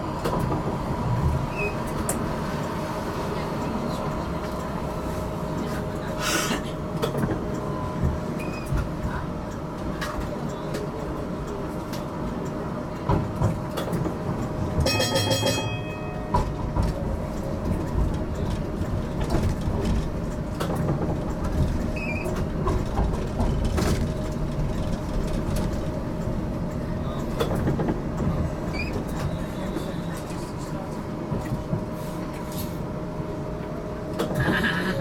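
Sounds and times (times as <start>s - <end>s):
tram rumbling along track: 0.0s - 35.0s
rapid ringing bell: 14.9s - 16.3s.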